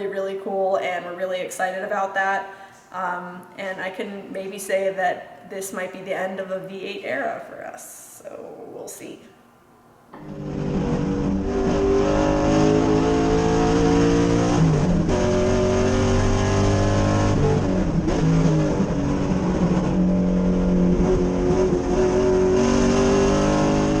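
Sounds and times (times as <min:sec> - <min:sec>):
race car engine at full throttle: 0:10.2 - 0:24.0.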